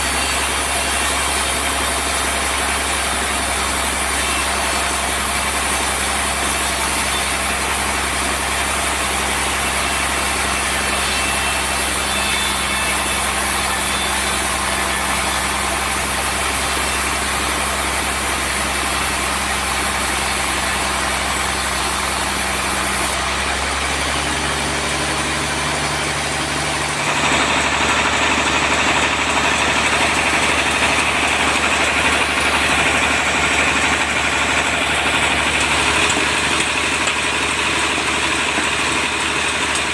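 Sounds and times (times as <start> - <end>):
sawmill machinery sawing log: 0.0 - 39.9.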